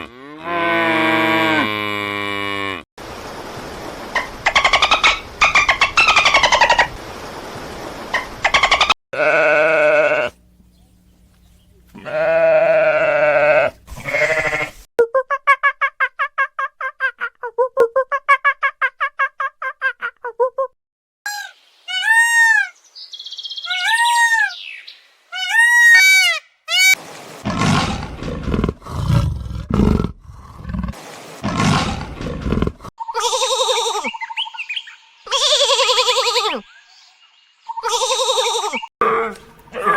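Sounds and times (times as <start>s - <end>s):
quavering bleat-like call: 9.1s - 10.4s, 12.0s - 14.9s
big cat roaring: 27.4s - 32.8s.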